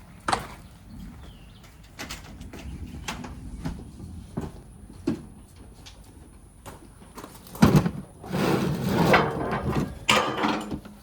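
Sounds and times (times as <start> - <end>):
objects clattering: 7.1 - 11.0.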